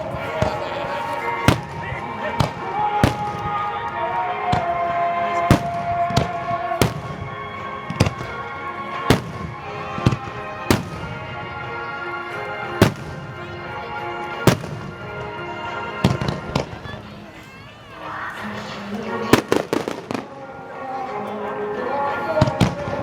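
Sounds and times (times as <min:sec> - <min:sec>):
fireworks bursting with bangs: 0:00.0 - 0:11.6, 0:12.7 - 0:13.6, 0:14.3 - 0:15.4, 0:16.0 - 0:16.9, 0:19.2 - 0:20.5, 0:22.4 - 0:23.0
background music: 0:00.0 - 0:23.0.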